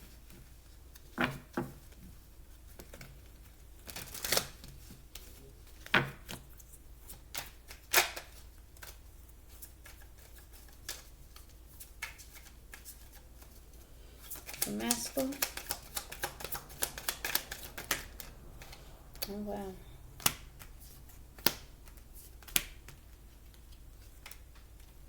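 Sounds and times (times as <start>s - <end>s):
cards being shuffled: 0.2s - 19.4s, 20.2s - 25.0s
card snaps and slaps: 7.3s - 9.0s, 14.3s - 19.3s, 21.4s - 23.6s.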